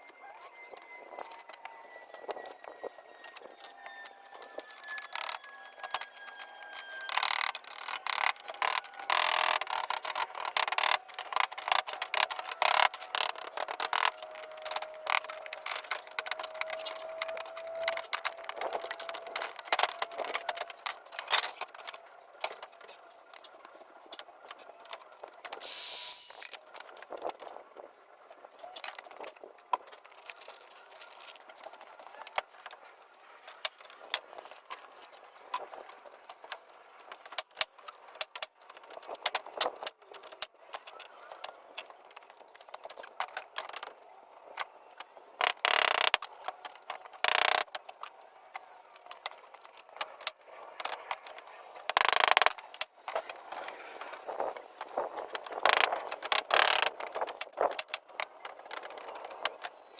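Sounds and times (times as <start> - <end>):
tools clicking and rattling: 2.3 - 23.6, 45.4 - 48.0, 55.5 - 59.4
short hiss: 25.6 - 26.5.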